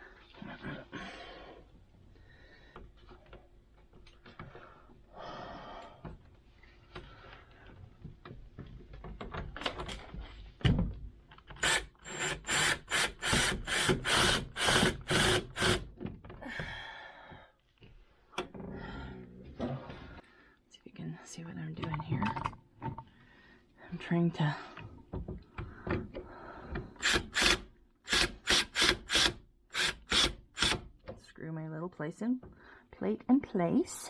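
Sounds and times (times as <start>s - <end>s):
screw rasping into wood: 11.6s - 15.9s, 27.0s - 30.8s.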